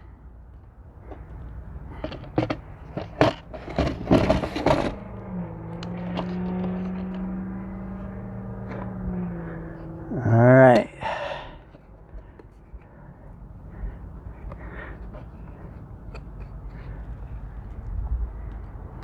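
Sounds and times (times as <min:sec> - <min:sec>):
plastic case clicks and scraping: 0:01.0 - 0:10.1, 0:11.5 - 0:19.0
low hum: 0:03.8 - 0:15.5.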